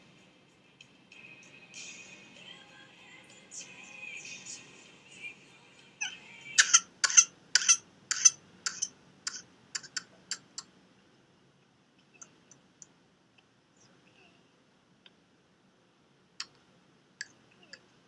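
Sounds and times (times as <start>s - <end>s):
sharp clicks: 6.6s - 10.7s.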